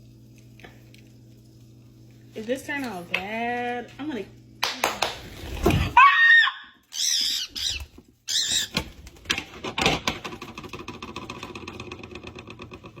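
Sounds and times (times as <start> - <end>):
bird squawking: 6.9 - 8.8.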